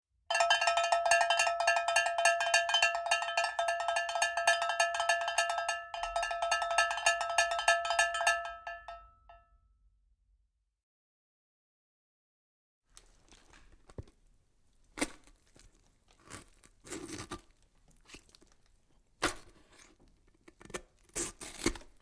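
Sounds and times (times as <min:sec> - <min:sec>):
ringing metallic bell strikes: 0:00.3 - 0:09.1.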